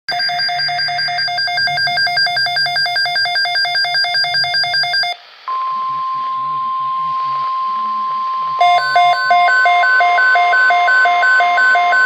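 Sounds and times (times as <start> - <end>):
rapid electronic alarm beeping: 0.1 - 12.0
higher rasping tone: 5.5 - 11.0.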